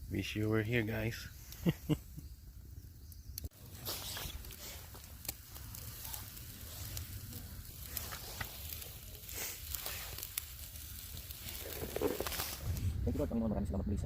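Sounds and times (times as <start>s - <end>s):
kebabs sizzling on a grill: 0.0s - 13.3s.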